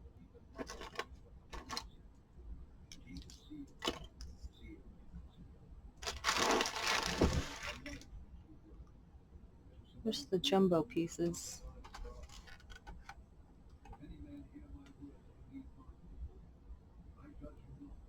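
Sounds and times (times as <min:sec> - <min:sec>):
cardboard pieces rustling: 0:00.6 - 0:01.0, 0:06.0 - 0:08.0.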